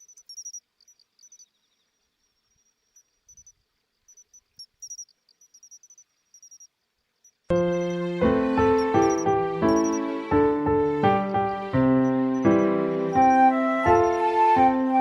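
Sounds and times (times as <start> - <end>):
crickets chirping: 0.0 - 15.0
instrumental music: 7.5 - 15.0.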